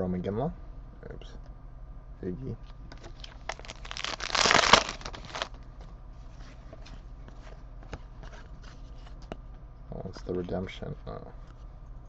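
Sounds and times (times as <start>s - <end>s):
card pack wrapper rustling: 3.0s - 5.6s.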